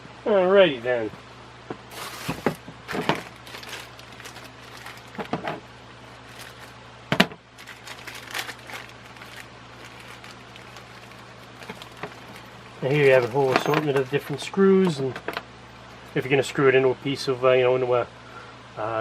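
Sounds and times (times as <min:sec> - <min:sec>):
steady low hum: 0:00.0 - 0:19.0
hardware parts clicking and knocking: 0:11.6 - 0:14.4.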